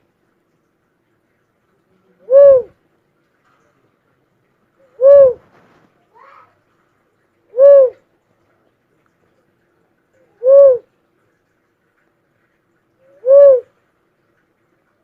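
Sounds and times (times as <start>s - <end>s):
bird hooting: 2.2s - 2.7s, 4.9s - 5.4s, 7.5s - 8.0s, 10.4s - 10.9s, 13.1s - 13.7s.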